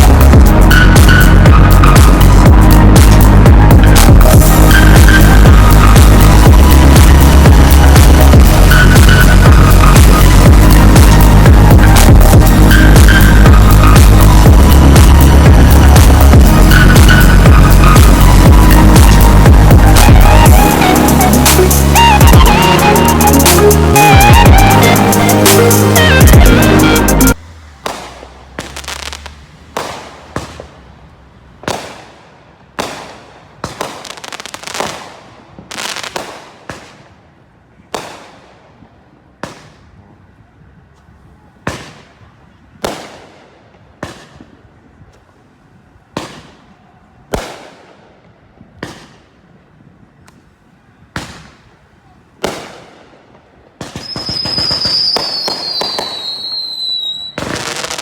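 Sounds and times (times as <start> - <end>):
firework crackling: 0.0 - 39.9, 41.6 - 45.0, 51.1 - 58.0
firework bangs: 27.4 - 40.1, 41.6 - 44.8, 46.1 - 49.4, 52.4 - 58.0
whistling firework shriek: 53.9 - 58.0.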